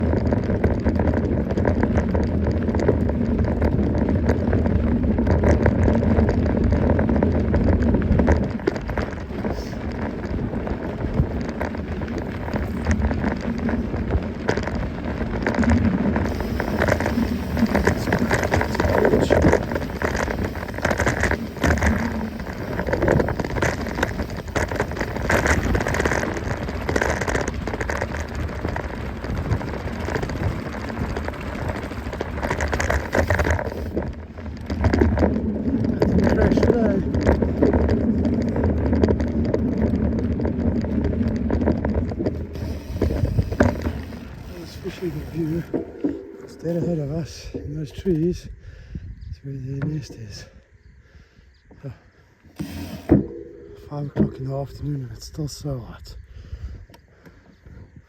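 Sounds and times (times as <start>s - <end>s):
low hum: 0.0s - 48.2s, 52.5s - 55.4s
bike tyres crunching and clattering: 0.0s - 58.0s.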